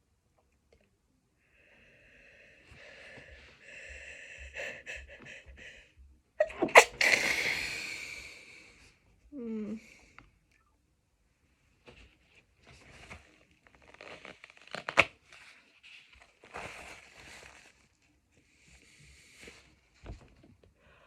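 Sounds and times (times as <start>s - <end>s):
crinkling and rustling: 11.8s - 20.8s.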